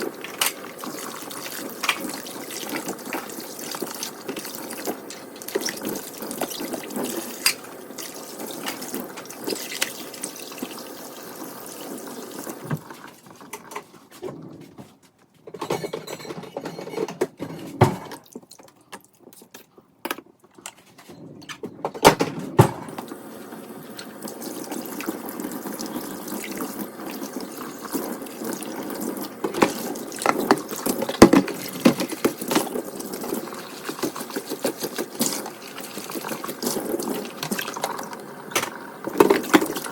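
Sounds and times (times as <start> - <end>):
tap running water into sink: 0.0 - 13.0, 23.9 - 39.9
items knocking in sink: 15.5 - 18.4, 21.6 - 23.0, 29.4 - 35.5.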